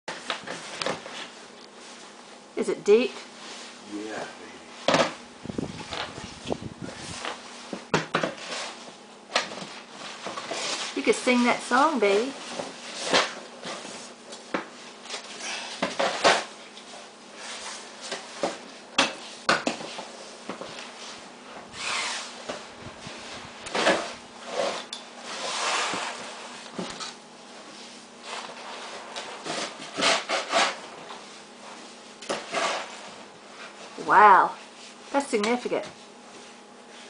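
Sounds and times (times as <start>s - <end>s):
snow shovel scraping snow: 21.8s - 22.3s.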